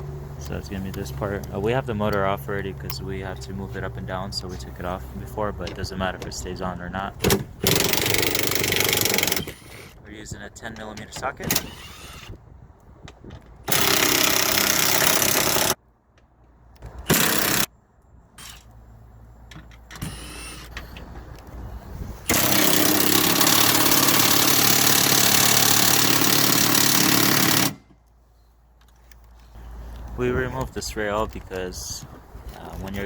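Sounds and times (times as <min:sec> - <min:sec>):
power tool backing out bolts: 0:07.2 - 0:10.0, 0:13.6 - 0:15.8, 0:22.3 - 0:28.0.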